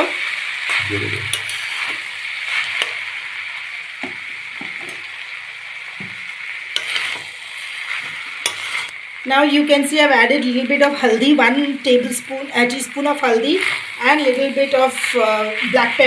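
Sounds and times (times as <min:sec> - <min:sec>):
filling sizzling in a pan: 0:00.0 - 0:16.0
stirring scraping against pan: 0:01.2 - 0:03.2, 0:06.7 - 0:09.0.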